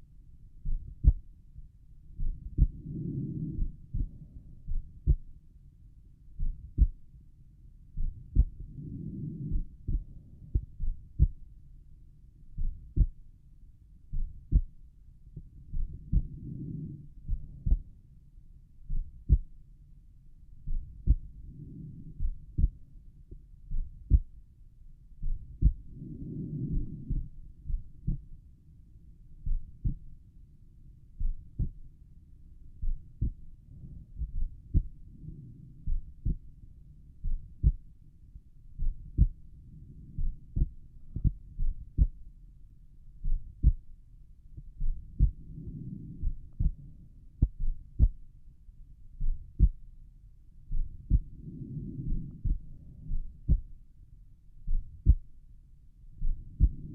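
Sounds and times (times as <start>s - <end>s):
heartbeat lub-dub: 0.6s - 5.4s, 6.4s - 7.1s, 8.0s - 11.6s, 12.6s - 13.2s, 14.1s - 14.8s, 15.4s - 18.0s, 18.9s - 19.6s, 20.7s - 24.4s, 25.2s - 28.5s, 29.4s - 30.1s, 31.2s - 31.8s, 32.8s - 33.4s, 34.0s - 35.1s, 35.8s - 36.5s, 37.2s - 37.9s, 38.8s - 39.4s, 40.0s - 42.3s, 43.2s - 43.9s, 44.6s - 48.3s, 49.2s - 49.8s, 50.7s - 53.8s, 54.7s - 55.3s, 56.2s - 56.9s.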